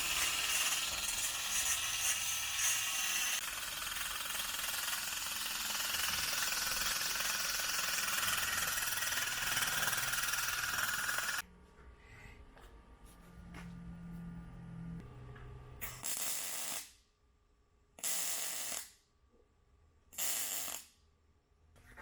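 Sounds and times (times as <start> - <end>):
loud metalworking noise: 0.0 - 11.4.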